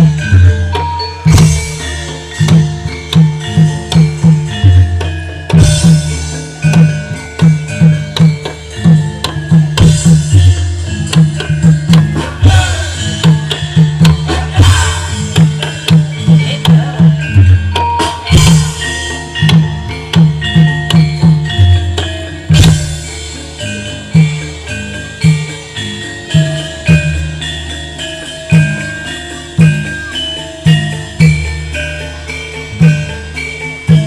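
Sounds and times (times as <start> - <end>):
sharp metallic strikes: 0.0 - 24.6
gamelan tones: 0.0 - 34.0
hand drums playing quick rhythm: 0.0 - 34.0.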